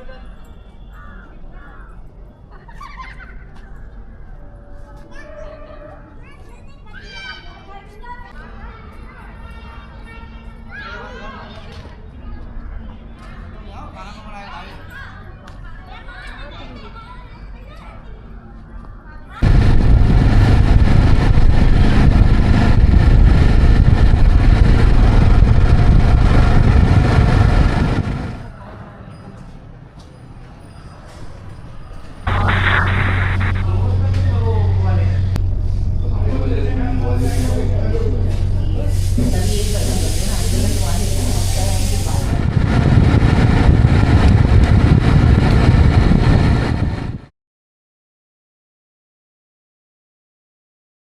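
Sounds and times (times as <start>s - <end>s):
motorcycle engine running: 19.4s - 28.5s
vehicle engine rumbling: 19.4s - 28.5s, 32.3s - 47.3s.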